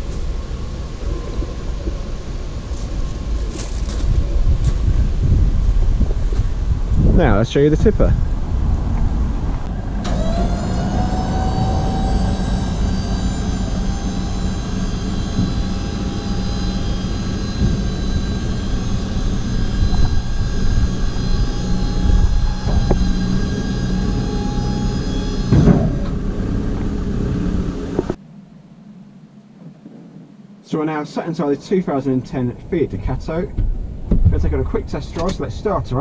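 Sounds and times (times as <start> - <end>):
low hum: 0.0 - 36.0
hydraulic pump whining: 9.6 - 28.2.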